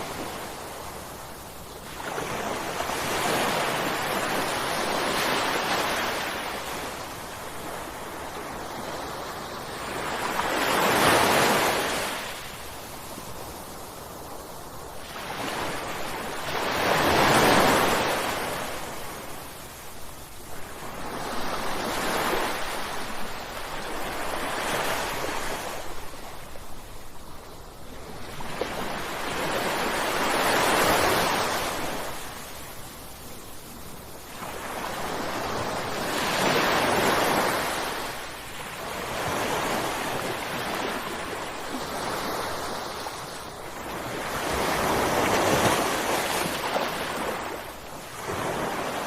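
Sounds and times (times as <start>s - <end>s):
ocean waves crashing: 0.0s - 13.8s, 15.0s - 19.6s, 28.4s - 32.7s, 34.3s - 49.0s.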